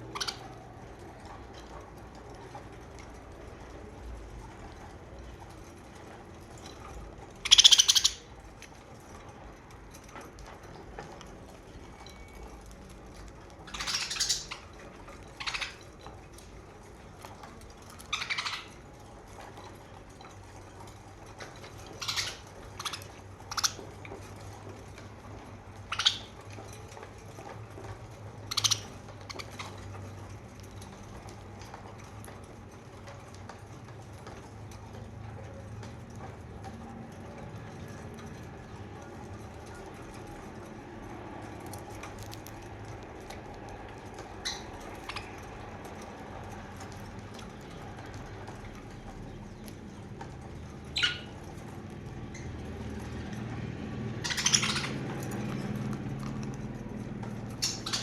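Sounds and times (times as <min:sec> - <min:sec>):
budgerigars chirping: 0:00.1 - 0:00.4, 0:07.4 - 0:08.3, 0:13.7 - 0:14.7, 0:15.3 - 0:15.8, 0:18.0 - 0:18.8, 0:21.9 - 0:23.8, 0:25.8 - 0:26.4, 0:28.5 - 0:29.8, 0:50.9 - 0:51.4, 0:54.2 - 0:55.0, 0:57.5 - 0:58.0.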